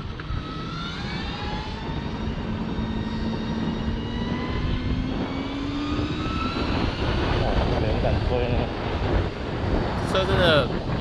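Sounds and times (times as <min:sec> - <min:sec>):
electric scooter drive whine: 0:00.0 - 0:11.0
wind and road rumble: 0:00.0 - 0:11.0.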